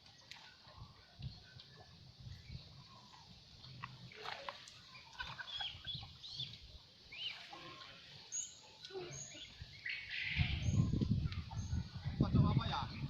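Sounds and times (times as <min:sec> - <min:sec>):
birds chirping and whistling: 0:04.9 - 0:07.6, 0:08.2 - 0:12.0.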